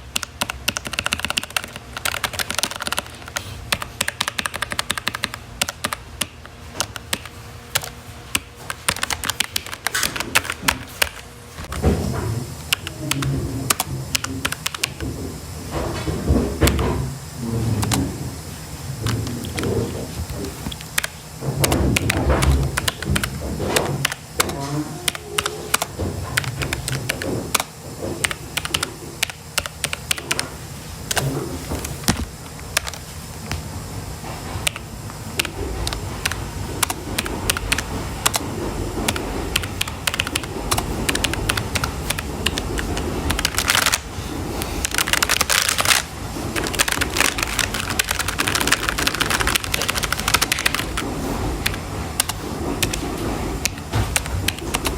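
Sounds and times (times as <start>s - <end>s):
typing on keyboard: 0.1s - 11.2s, 12.7s - 15.0s, 20.7s - 30.5s, 34.6s - 44.0s, 44.8s - 53.0s, 53.6s - 54.9s.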